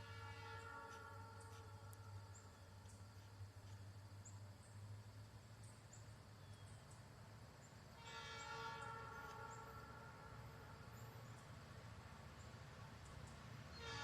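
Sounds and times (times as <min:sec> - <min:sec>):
distant locomotive air horn: 0:00.0 - 0:02.8, 0:07.9 - 0:11.4, 0:13.6 - 0:14.0.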